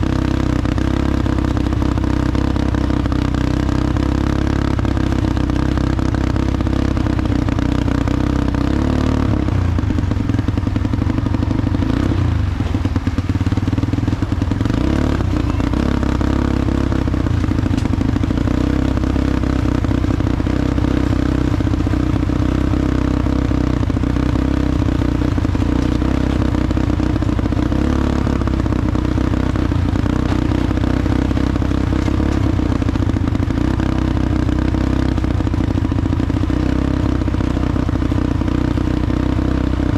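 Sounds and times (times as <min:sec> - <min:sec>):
atv engine running: 0:00.0 - 0:39.9
vehicle clattering over ground: 0:10.7 - 0:15.8, 0:17.2 - 0:18.3, 0:25.4 - 0:33.7.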